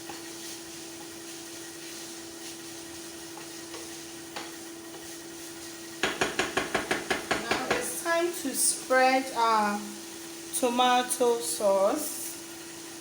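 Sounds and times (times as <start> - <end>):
filling sizzling in a frying pan: 0.0 - 13.0
sharp taps: 6.0 - 7.9.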